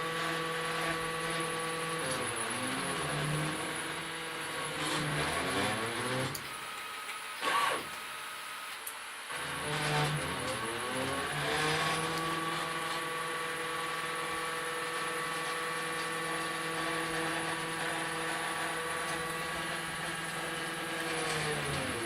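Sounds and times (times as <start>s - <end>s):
stepper motors whining: 9.4s - 22.0s.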